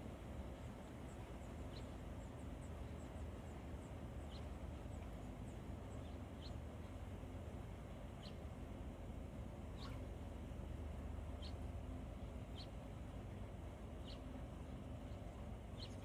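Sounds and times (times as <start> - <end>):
low hum: 0.0 - 16.0
small bird chirping: 8.2 - 8.4, 9.7 - 10.1, 11.3 - 11.6, 12.5 - 12.8, 14.0 - 16.0.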